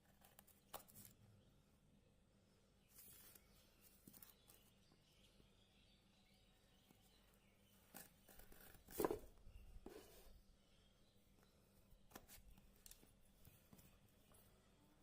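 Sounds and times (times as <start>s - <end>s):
handling rustling: 7.9s - 10.3s.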